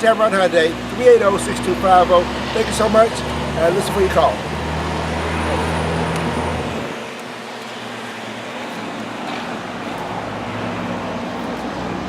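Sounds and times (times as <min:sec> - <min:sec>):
road traffic noise: 0:00.0 - 0:12.0
low engine hum: 0:00.1 - 0:12.0.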